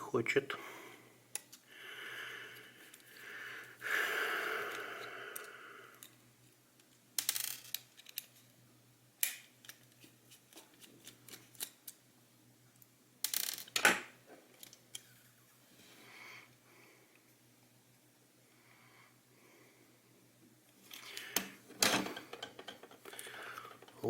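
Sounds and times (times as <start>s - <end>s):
plastic parts clicking and rattling: 6.8s - 8.5s, 9.2s - 12.0s, 12.8s - 15.1s, 20.8s - 24.0s.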